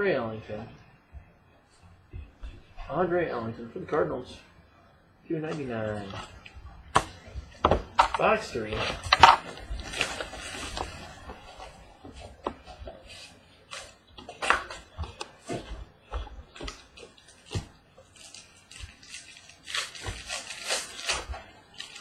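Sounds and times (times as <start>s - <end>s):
cardboard and packaging rustling: 5.9s - 22.0s.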